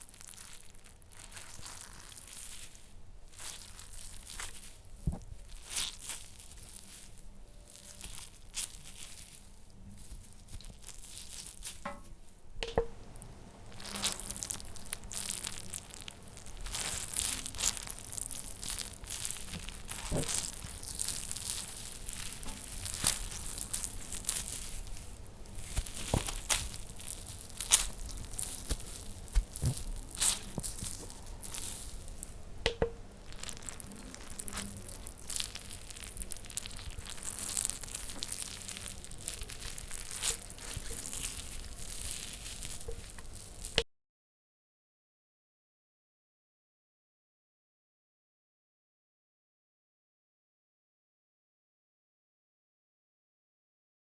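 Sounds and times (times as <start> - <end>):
flesh tearing and crunching: 0.0 - 11.8, 13.7 - 32.4, 33.2 - 43.8.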